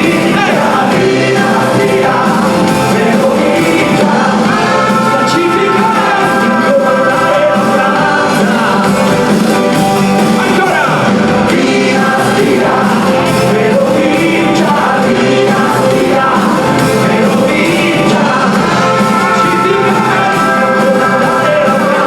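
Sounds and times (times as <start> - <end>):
person singing: 0.0 - 22.0
rock band playing live: 0.0 - 22.0.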